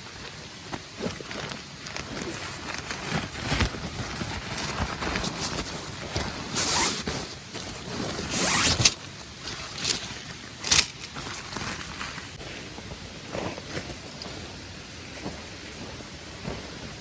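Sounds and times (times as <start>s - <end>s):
fabric rustling: 0.0s - 12.7s
zipper being pulled: 8.2s - 9.0s.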